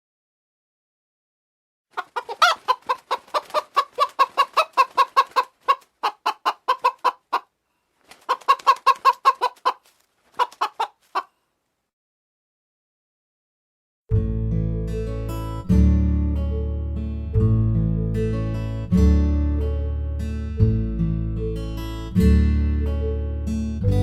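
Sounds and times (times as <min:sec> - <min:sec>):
chicken clucking: 0:01.9 - 0:07.5, 0:08.1 - 0:11.4.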